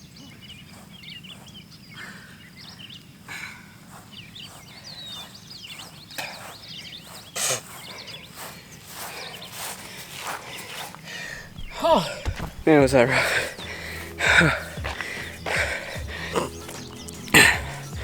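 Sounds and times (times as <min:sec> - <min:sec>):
man gasping for breath: 0:03.3 - 0:03.8, 0:11.0 - 0:18.0.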